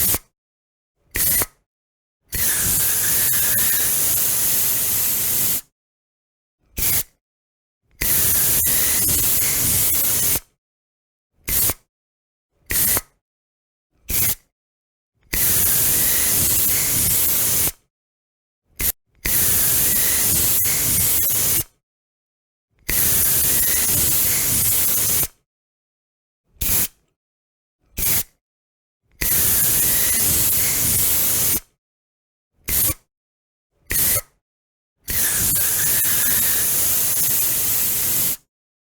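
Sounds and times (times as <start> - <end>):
deodorant spray hissing: 2.4 - 5.6, 35.2 - 38.4.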